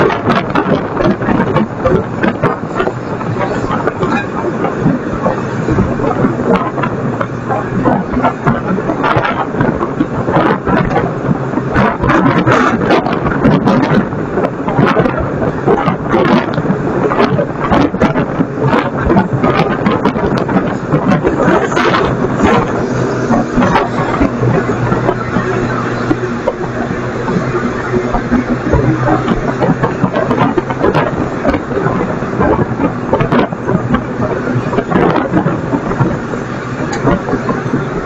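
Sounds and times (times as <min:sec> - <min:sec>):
garbage truck humming: 0:18.4 - 0:38.0.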